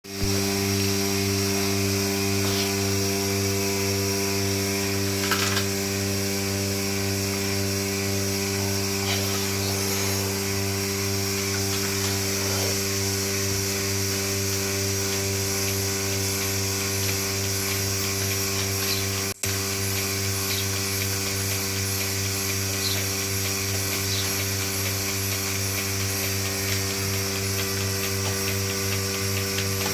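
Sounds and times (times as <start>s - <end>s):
milking machine humming: 0.0s - 29.9s.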